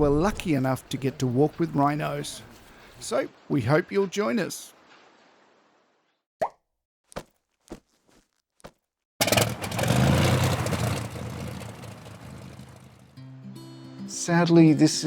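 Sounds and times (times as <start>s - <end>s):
vehicle engine starting and rumbling: 9.2s - 13.2s.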